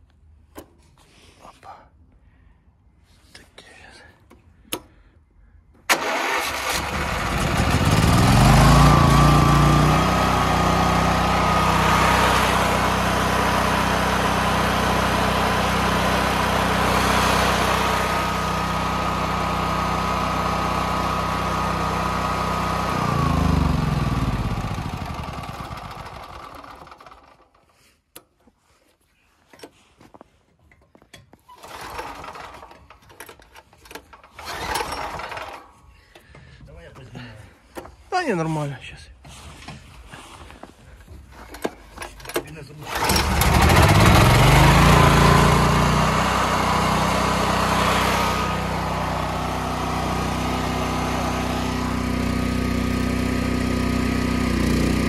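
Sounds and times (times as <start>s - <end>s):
portable generator engine running: 5.9s - 27.5s, 31.6s - 36.6s, 41.5s - 55.0s.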